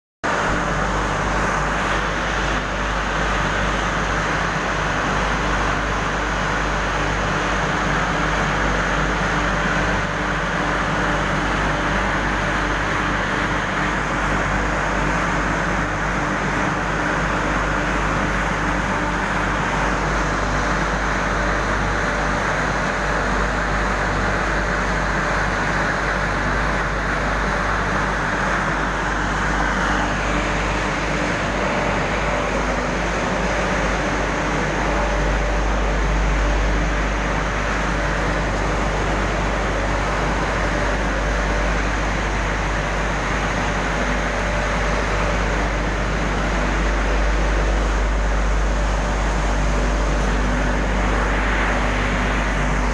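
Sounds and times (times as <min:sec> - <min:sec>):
furnace roaring: 0:00.2 - 0:52.9
low hum: 0:44.0 - 0:52.9.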